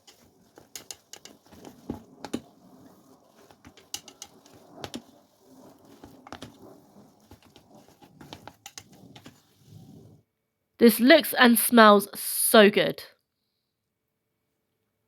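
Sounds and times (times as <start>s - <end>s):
utensil clicking against pot: 0.0s - 1.6s
noodles squishing while stirred: 0.0s - 10.1s.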